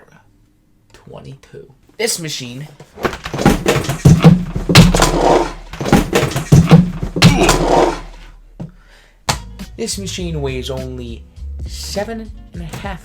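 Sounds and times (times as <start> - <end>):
loud hard thumps and knocks: 3.0 - 8.3.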